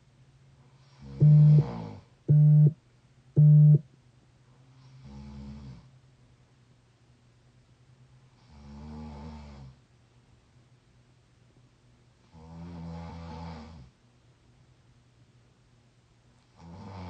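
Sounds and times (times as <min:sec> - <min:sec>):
person snoring: 0:01.0 - 0:02.0.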